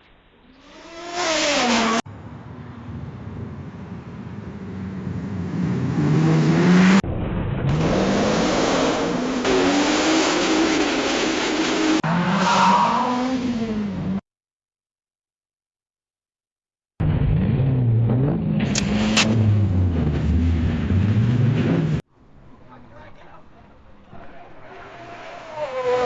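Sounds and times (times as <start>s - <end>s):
engine revving up: 0.6s - 7.0s, 17.0s - 22.0s.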